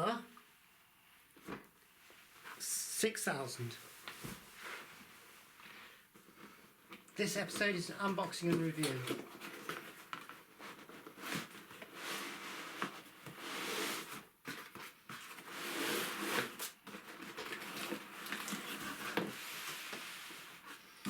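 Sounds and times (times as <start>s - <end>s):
packaging rustling and scraping: 8.3s - 21.0s.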